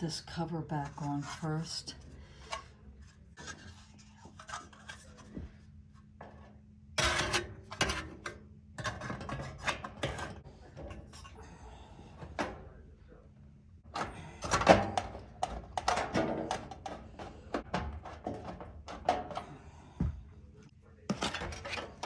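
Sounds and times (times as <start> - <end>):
heater cover clicks and knocks: 13.9 - 19.4.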